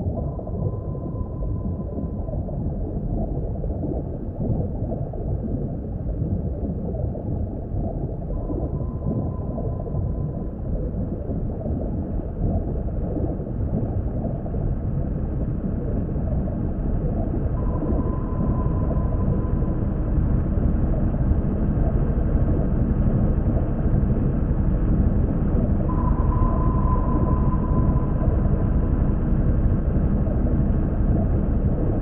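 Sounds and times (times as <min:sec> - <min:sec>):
muffled underwater rumbling: 0:00.0 - 0:32.0
faint thin tone: 0:25.8 - 0:29.1.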